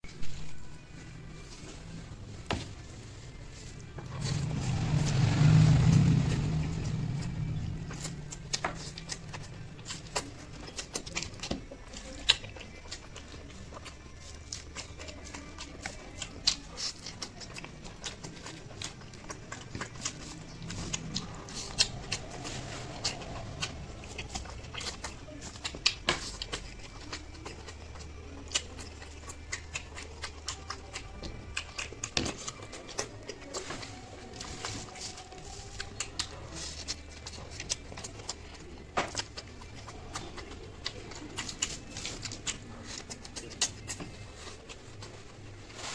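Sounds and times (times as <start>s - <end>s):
wet chewing mouth clicks: 3.8s - 45.8s.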